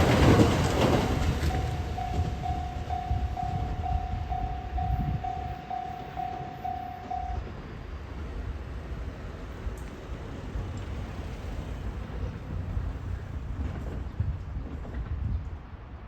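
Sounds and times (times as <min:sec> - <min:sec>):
train rumbling: 0:00.0 - 0:16.0
level crossing warning bell: 0:01.1 - 0:07.6.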